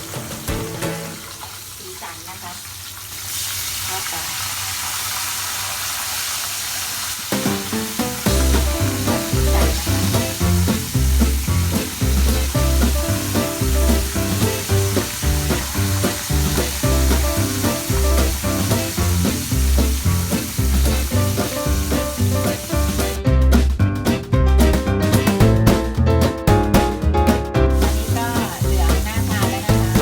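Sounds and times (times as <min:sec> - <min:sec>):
food sizzling in hot oil: 0:00.0 - 0:25.9, 0:27.6 - 0:30.0
background music with steady beat: 0:07.4 - 0:30.0.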